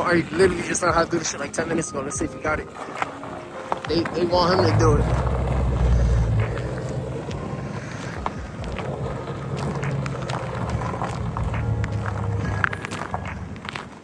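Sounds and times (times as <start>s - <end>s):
wind buffeting microphone: 0.0s - 14.0s
car engine revving: 3.9s - 14.0s.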